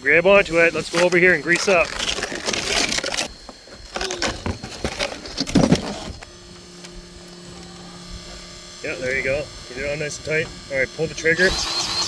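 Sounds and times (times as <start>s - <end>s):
rustling and clattering of handled things: 0.7s - 8.5s.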